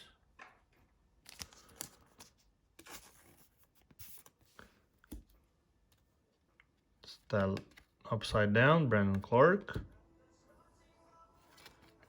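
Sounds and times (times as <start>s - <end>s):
trading cards rustling and clicking: 1.2s - 4.4s, 11.4s - 12.0s.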